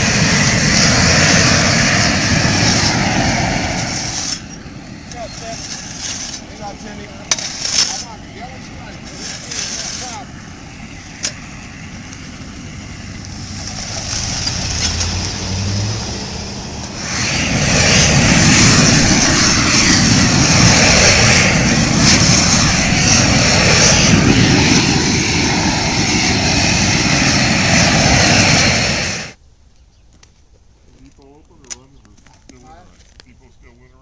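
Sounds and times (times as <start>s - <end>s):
propane torch roaring: 0.0s - 29.4s.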